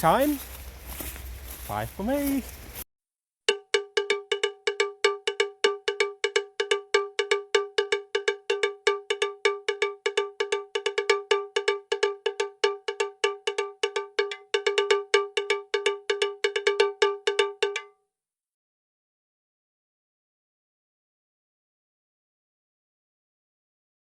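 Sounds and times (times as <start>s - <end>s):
rapid bell-like tone: 3.5s - 17.9s.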